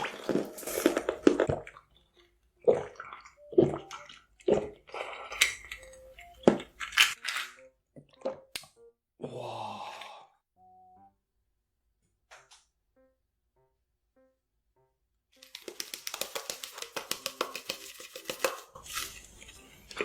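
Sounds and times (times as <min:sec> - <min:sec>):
wet mouth noises: 0:00.0 - 0:02.0, 0:02.6 - 0:07.2
person chewing soft food: 0:00.0 - 0:07.3.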